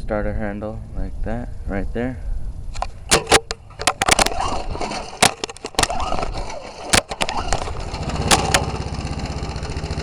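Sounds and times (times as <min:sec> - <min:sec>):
recoil starter clacks: 0:02.8 - 0:10.0
engine cranking: 0:03.1 - 0:10.0
lawnmower engine running: 0:03.1 - 0:10.0.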